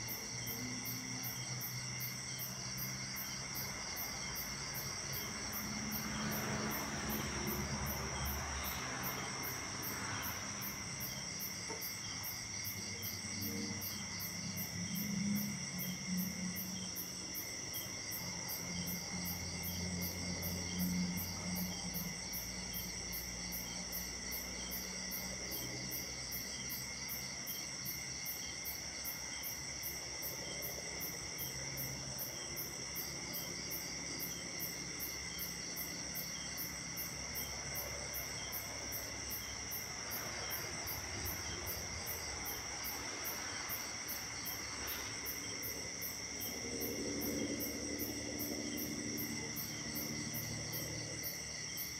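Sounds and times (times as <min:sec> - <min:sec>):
crickets trilling: 0:00.0 - 0:51.9
pulsing insect chirp: 0:00.0 - 0:51.9.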